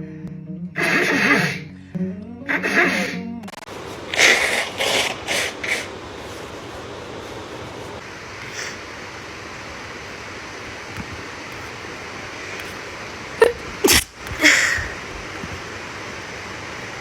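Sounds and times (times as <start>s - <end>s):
person breathing: 0.8s - 5.9s, 8.4s - 8.9s, 14.4s - 15.1s
steady background hiss: 2.5s - 17.0s.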